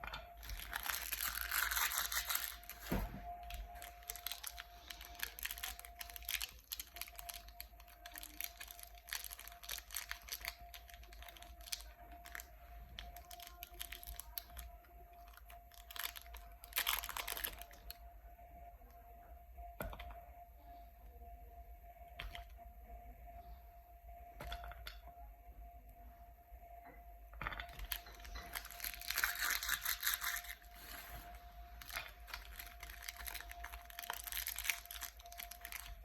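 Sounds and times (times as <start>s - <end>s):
wrapper ripping: 0.4s - 17.8s, 27.7s - 36.0s
plastic wrapper crinkling: 0.4s - 17.9s, 27.6s - 36.0s.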